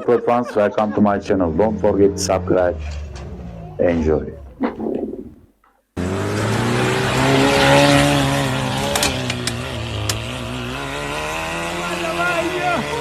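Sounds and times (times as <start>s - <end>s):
off-road vehicle engine under load: 1.3s - 4.6s, 6.0s - 13.0s.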